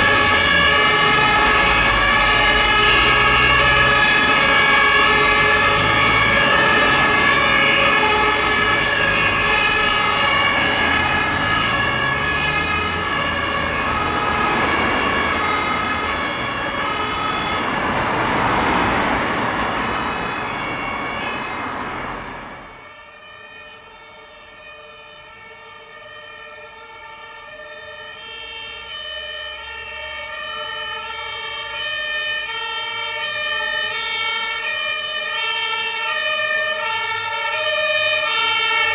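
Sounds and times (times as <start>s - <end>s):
vehicle engine: 0.0s - 22.9s
road noise: 0.0s - 23.8s, 24.7s - 38.9s
two-tone emergency sirens: 0.0s - 38.9s.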